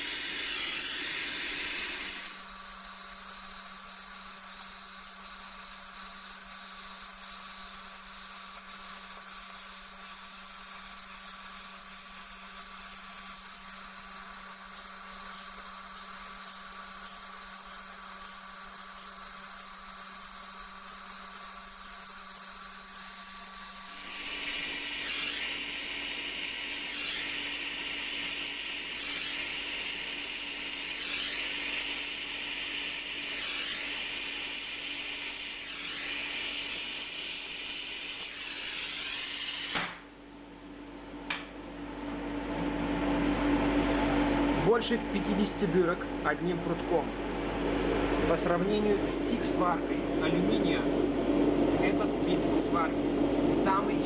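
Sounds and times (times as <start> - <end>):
steady hum: 0.0 - 38.7
torch flame hissing: 0.0 - 40.0.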